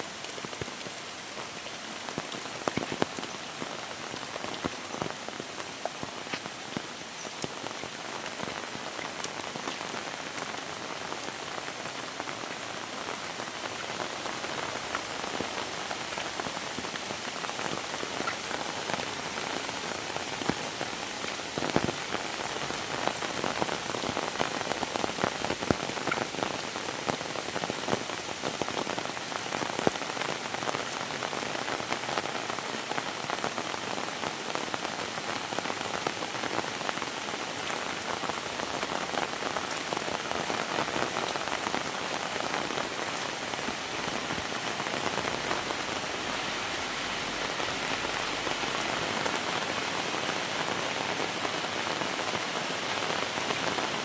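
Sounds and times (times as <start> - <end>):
heavy rain falling: 0.0 - 54.0
raindrops hitting a surface: 0.0 - 54.0.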